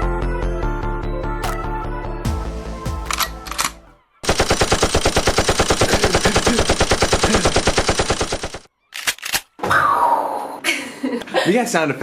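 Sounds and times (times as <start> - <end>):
machine-gun fire: 2.4 - 8.7.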